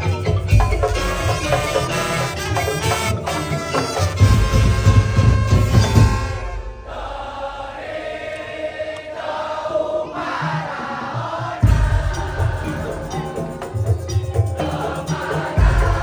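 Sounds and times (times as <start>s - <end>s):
heavy drum beats: 0.0s - 6.9s, 11.5s - 16.0s
band rehearsing: 0.0s - 7.0s.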